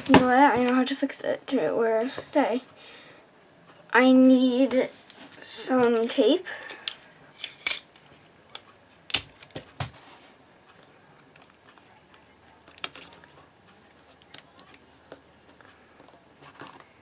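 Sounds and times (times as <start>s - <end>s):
plastic pieces clicking and snapping: 6.7s - 9.6s.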